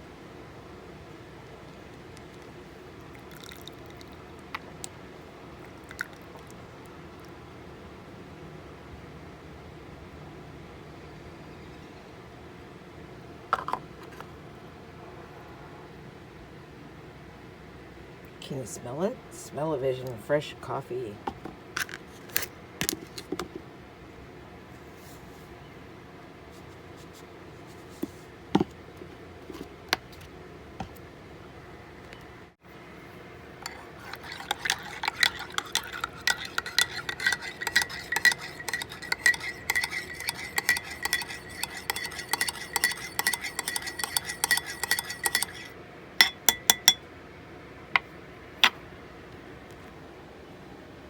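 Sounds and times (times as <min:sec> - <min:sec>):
spoon clinking in a mug: 0:33.6 - 0:47.0.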